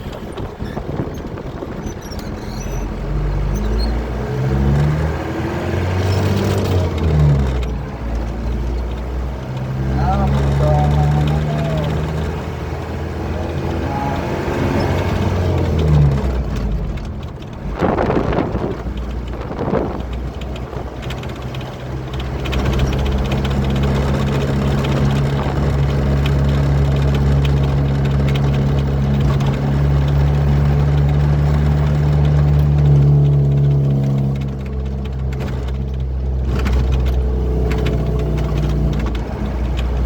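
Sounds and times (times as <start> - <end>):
truck diesel engine drone: 0.0 - 40.0.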